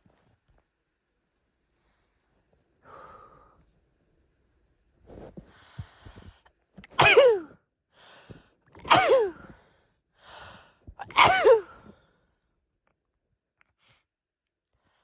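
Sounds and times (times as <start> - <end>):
woman sneezing: 6.9 - 7.6, 8.8 - 9.5, 11.0 - 11.9.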